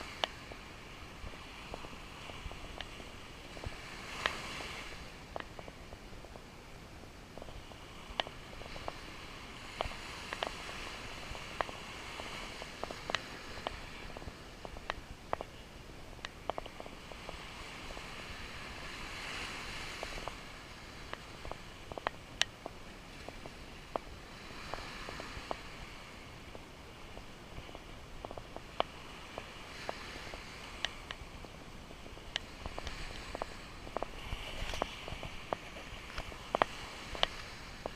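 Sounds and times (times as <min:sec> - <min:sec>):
small waves washing on sand: 0:00.0 - 0:37.9
small clicks and taps: 0:01.7 - 0:03.0, 0:05.3 - 0:06.4, 0:09.8 - 0:10.6, 0:12.6 - 0:15.5, 0:16.2 - 0:17.0, 0:21.1 - 0:22.8, 0:27.2 - 0:31.2, 0:32.3 - 0:37.9.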